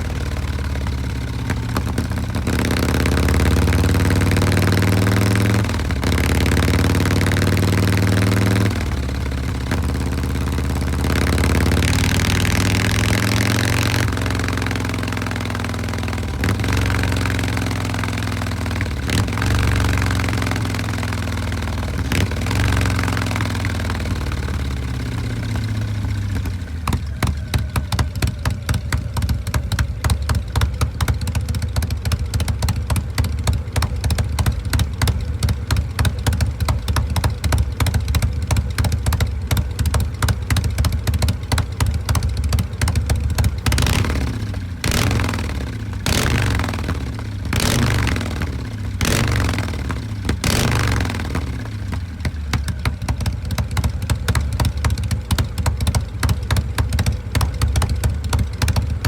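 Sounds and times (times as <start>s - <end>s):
motorcycle engine revving and idling: 0.0s - 59.0s.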